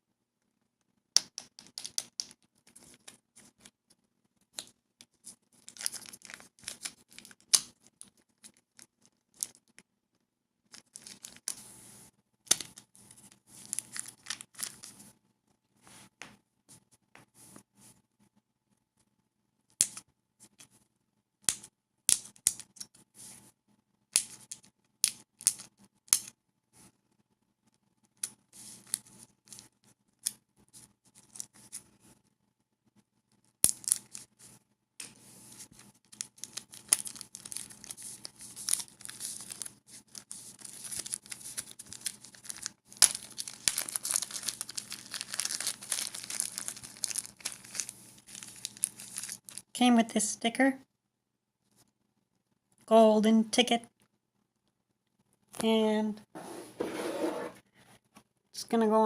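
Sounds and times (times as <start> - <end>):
packaging crinkling and tearing: 5.6 - 9.8, 10.7 - 11.6, 13.6 - 14.9, 35.7 - 49.7.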